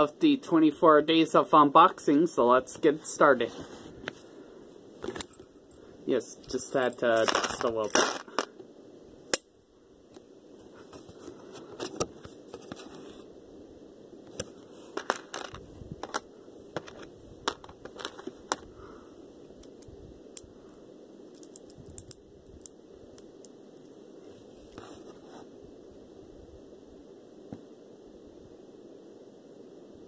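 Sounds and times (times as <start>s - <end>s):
packaging being handled and opened: 7.1s - 8.5s, 14.4s - 18.7s.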